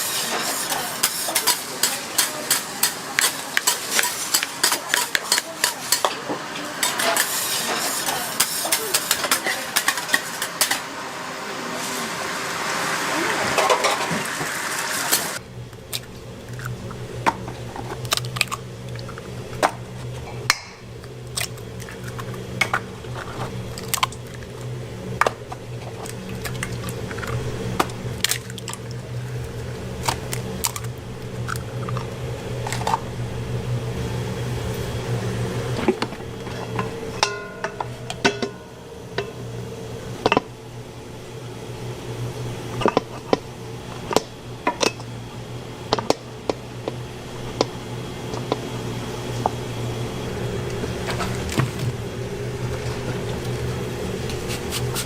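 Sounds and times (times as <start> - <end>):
steady low hum: 15.3 - 55.0.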